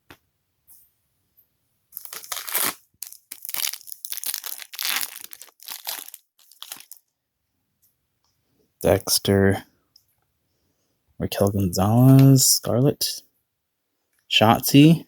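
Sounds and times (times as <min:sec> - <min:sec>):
foil wrapper crinkling and tearing: 0:02.0 - 0:07.1.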